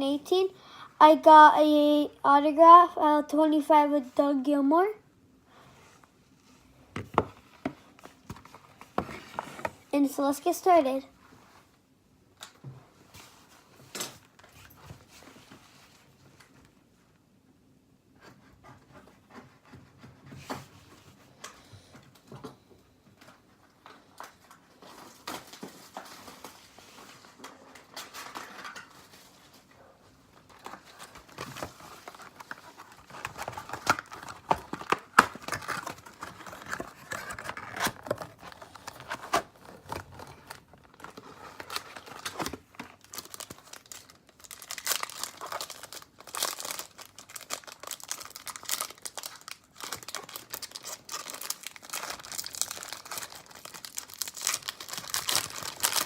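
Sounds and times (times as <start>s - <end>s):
plastic and foil wrapping crinkling: 23.8s - 29.7s, 30.3s - 56.0s.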